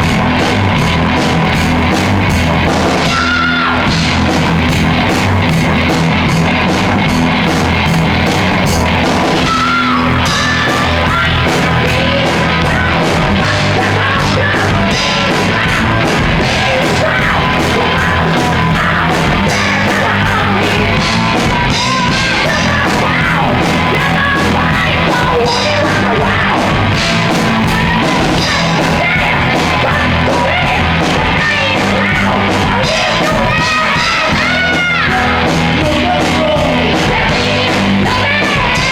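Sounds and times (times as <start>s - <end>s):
hard rock band playing: 0.0s - 38.9s
drum beat: 1.4s - 3.4s, 4.0s - 6.3s, 7.4s - 12.2s, 15.8s - 25.6s, 26.8s - 38.9s
person shouting singing: 1.5s - 5.9s, 7.5s - 38.9s.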